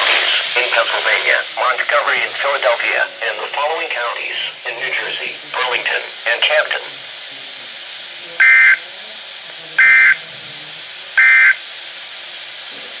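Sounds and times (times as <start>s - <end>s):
steady hiss: 0.0s - 13.0s
harsh two-tone digital bursts: 8.4s - 8.8s, 9.8s - 10.2s, 11.2s - 11.6s.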